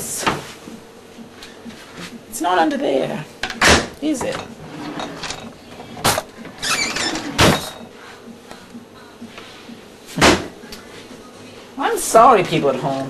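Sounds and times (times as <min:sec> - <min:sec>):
household things moved and bumped: 0:03.4 - 0:07.9.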